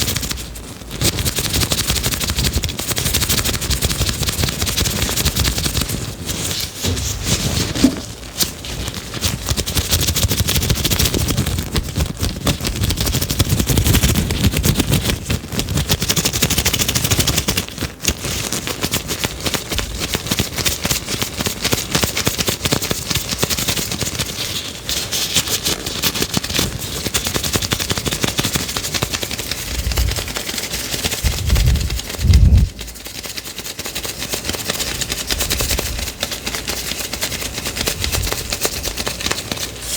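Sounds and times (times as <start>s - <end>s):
dull low thumps: 31.3s - 32.8s.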